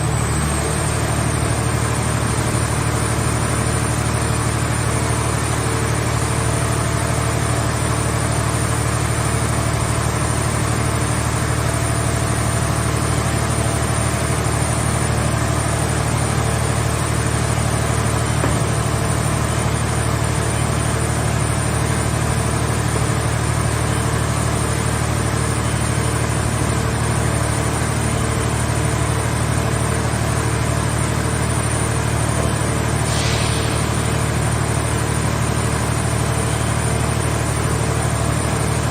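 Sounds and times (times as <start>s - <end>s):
machine engine humming: 12.4s - 38.9s
short hiss: 33.0s - 34.4s.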